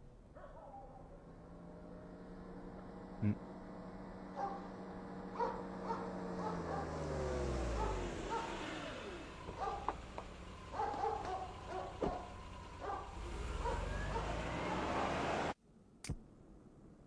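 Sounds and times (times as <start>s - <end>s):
dog barking and yelping: 0.4s - 1.3s, 4.3s - 4.7s, 5.3s - 10.0s, 10.6s - 15.2s.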